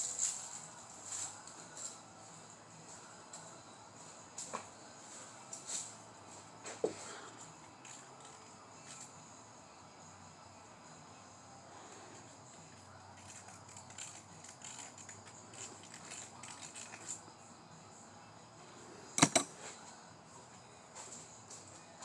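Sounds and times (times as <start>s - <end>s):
hand tool clicks and ratcheting: 19.2s - 19.5s
sharp metallic clicks: 19.2s - 19.5s.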